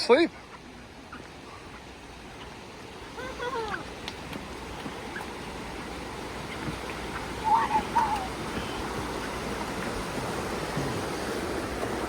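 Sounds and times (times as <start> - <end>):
flowing water rushing: 0.0 - 12.0
high wavering calls: 5.1 - 9.7.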